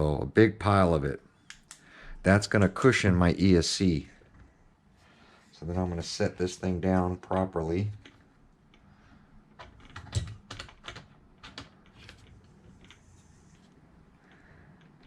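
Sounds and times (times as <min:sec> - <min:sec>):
wires clicking and tapping: 0:01.4 - 0:01.9, 0:07.2 - 0:15.0.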